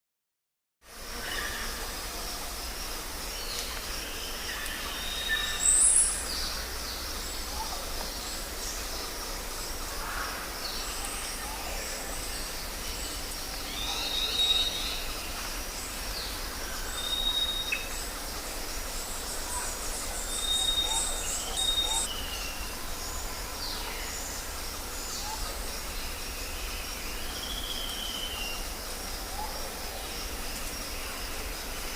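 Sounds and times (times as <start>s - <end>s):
birds chirping and whistling: 20.2s - 22.7s.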